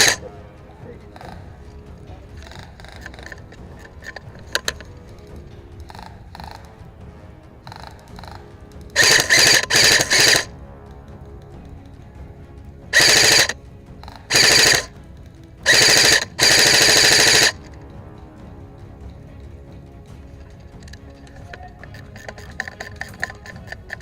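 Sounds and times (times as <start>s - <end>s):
airsoft gun firing bursts: 0.0s - 0.2s, 2.4s - 4.9s, 9.0s - 10.5s, 13.0s - 13.6s, 14.3s - 14.9s, 15.6s - 17.7s.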